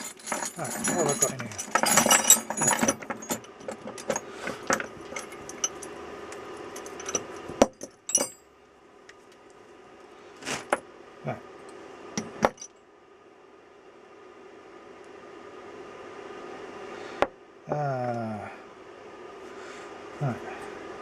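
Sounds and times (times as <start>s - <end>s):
metal spanners clinking: 0.0s - 6.0s, 6.7s - 8.5s.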